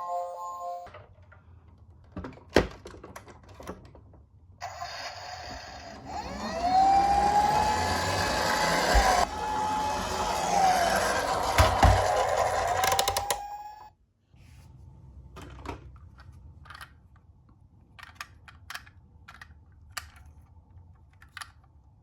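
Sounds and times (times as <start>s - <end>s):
small motor whirring: 4.6s - 13.9s
toy siren rising in pitch: 4.6s - 13.9s
toy car clicks: 12.2s - 13.7s.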